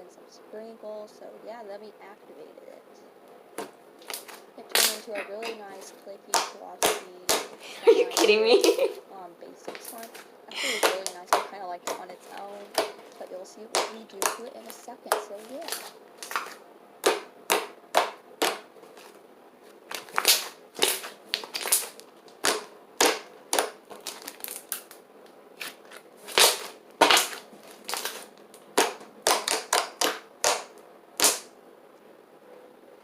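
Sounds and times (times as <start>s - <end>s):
slime clicking pops: 28.8s - 31.5s.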